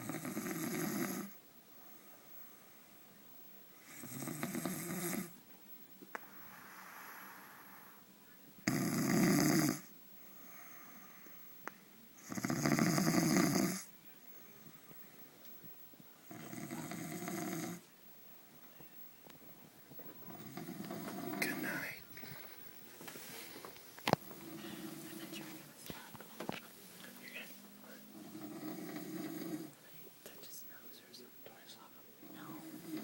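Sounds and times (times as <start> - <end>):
man snoring: 0.0 - 1.4, 3.9 - 5.4, 8.6 - 9.9, 12.2 - 13.9, 16.3 - 17.8, 20.3 - 22.0, 24.3 - 25.5, 27.9 - 29.8, 32.2 - 33.0
soft breathing: 6.2 - 8.1, 10.2 - 11.6, 19.8 - 33.0.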